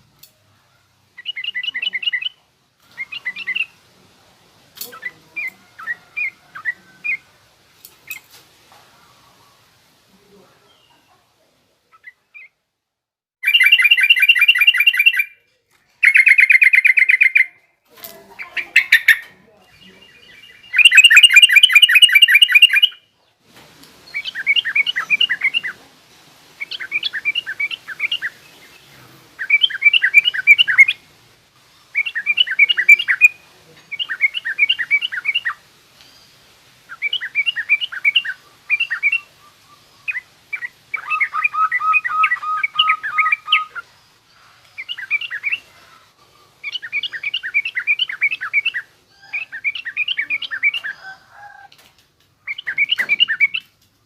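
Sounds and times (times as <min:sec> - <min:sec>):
bird chattering song: 0:01.2 - 0:03.8, 0:13.4 - 0:15.4, 0:16.0 - 0:17.6, 0:18.4 - 0:23.1, 0:24.1 - 0:25.8, 0:26.6 - 0:31.0, 0:31.8 - 0:35.6, 0:36.9 - 0:44.2, 0:44.8 - 0:45.7, 0:46.6 - 0:51.2, 0:52.4 - 0:53.7.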